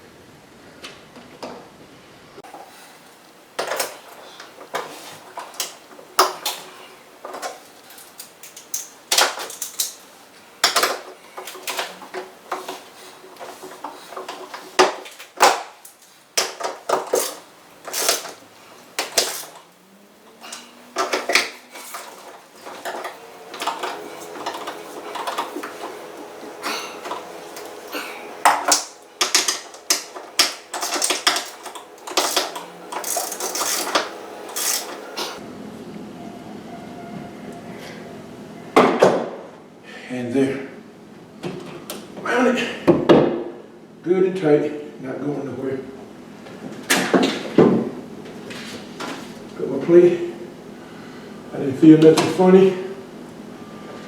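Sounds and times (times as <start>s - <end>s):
metal parts clinking: 7.3s - 12.8s, 13.5s - 25.7s, 28.4s - 35.4s.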